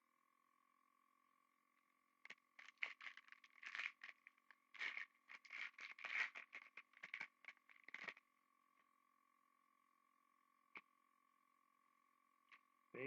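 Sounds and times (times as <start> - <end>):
trading cards rustling: 2.6 - 8.2.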